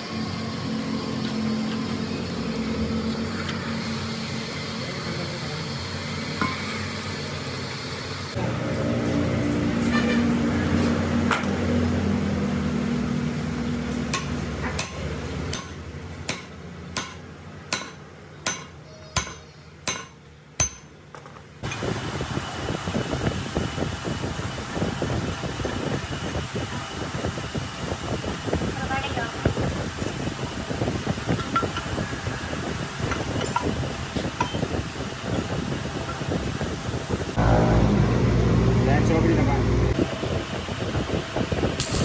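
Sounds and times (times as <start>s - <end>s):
mechanical hum: 0.0s - 42.0s
hammer blows on metal: 14.2s - 20.9s.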